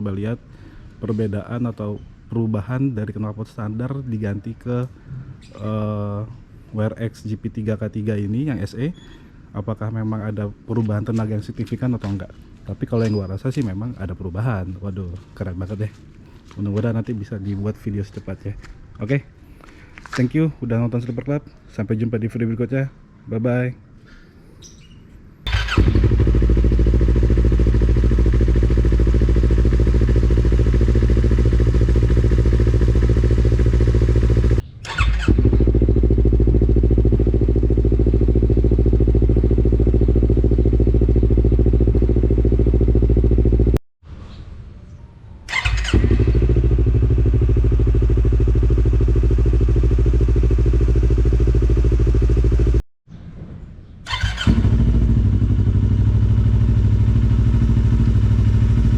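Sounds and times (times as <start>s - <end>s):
motorcycle engine running: 25.5s - 43.8s, 45.6s - 52.8s, 54.1s - 58.9s.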